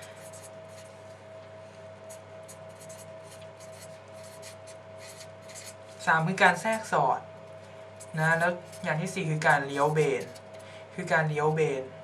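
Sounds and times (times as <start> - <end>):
pen scratching on paper: 0.0 - 0.9, 2.0 - 6.0
steady electrical hum: 0.0 - 12.0.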